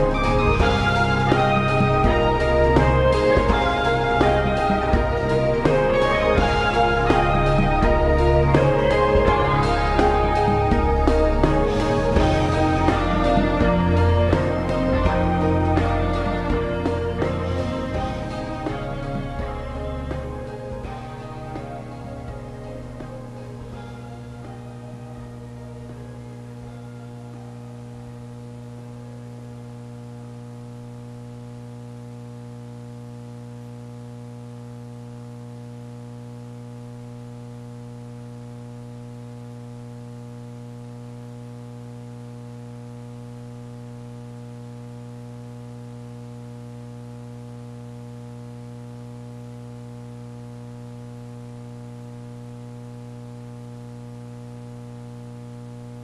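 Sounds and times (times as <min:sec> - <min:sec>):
background music: 0:00.0 - 0:29.4
electrical mains hum: 0:00.0 - 0:56.0.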